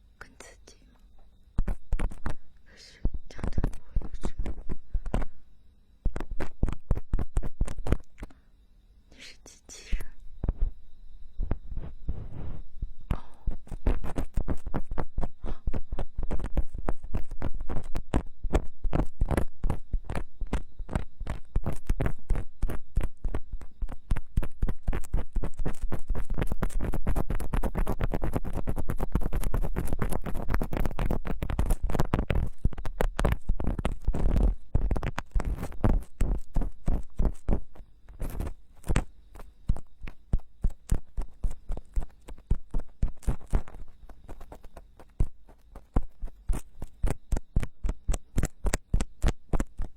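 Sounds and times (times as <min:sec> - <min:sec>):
tools scraping microphone ear: 0:24.4 - 0:49.9.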